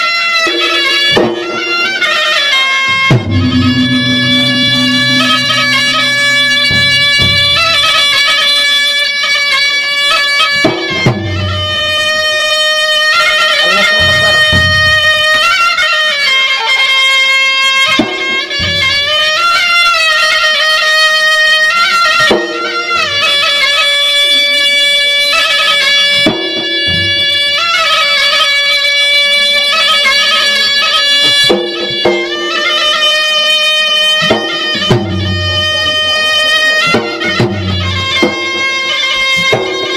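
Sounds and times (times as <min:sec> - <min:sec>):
drums: 0:00.0 - 0:08.5, 0:09.6 - 0:15.8, 0:17.8 - 0:25.1, 0:26.0 - 0:28.0, 0:31.1 - 0:39.9
piercing reed wind instrument: 0:01.4 - 0:08.4.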